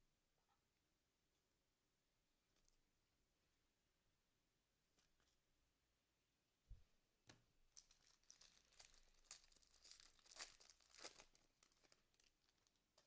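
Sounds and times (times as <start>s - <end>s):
wrapper tearing and crinkling: 7.7s - 12.8s.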